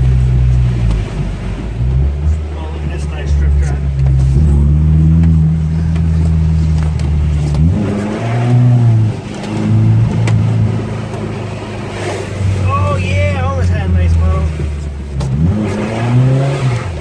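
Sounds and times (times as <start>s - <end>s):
truck engine revving under load: 0.0s - 17.0s.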